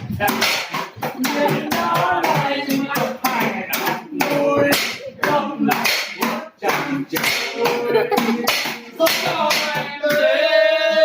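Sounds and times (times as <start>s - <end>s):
people singing: 0.0s - 11.0s
hands clapping: 3.7s - 10.2s.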